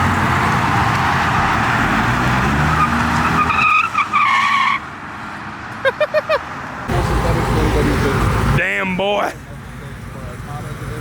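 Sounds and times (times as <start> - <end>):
car engine under full throttle: 0.0 - 3.9, 6.7 - 11.0
tire squeal: 0.7 - 4.9.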